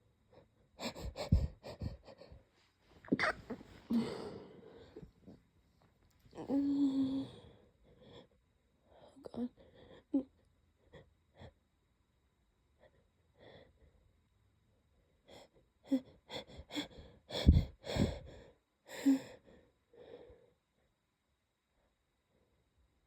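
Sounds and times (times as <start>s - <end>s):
stifled sneezes: 3.0s - 3.7s.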